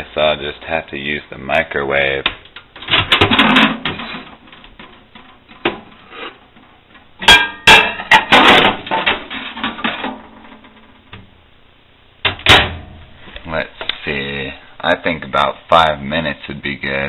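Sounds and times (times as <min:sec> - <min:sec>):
dishes clattering: 0:07.2 - 0:10.8.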